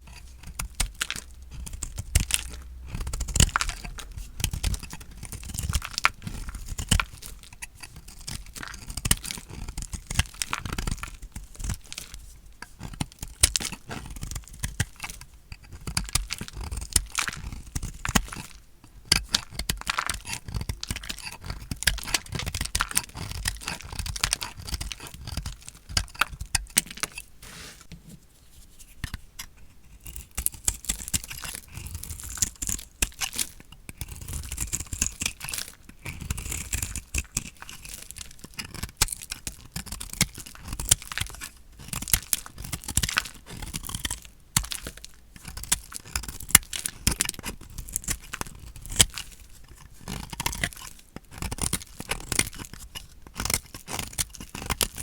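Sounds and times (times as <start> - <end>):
knife cutting through dry soap: 0.0 - 18.6, 19.2 - 28.2, 29.8 - 55.0.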